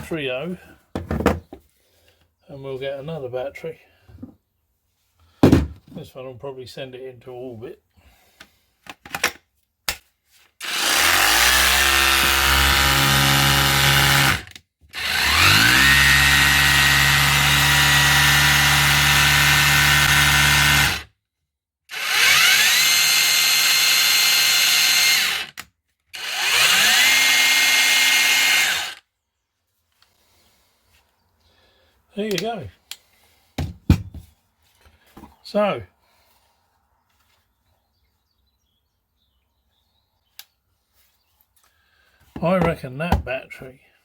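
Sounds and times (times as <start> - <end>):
hammer drill motor whining: 10.6 - 21.1, 21.9 - 29.1.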